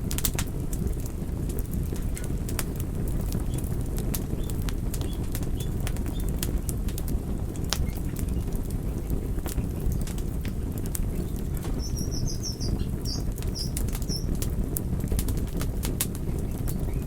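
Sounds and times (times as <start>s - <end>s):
wood fire crackling and popping: 0.0s - 17.0s
high chirps: 11.2s - 14.3s.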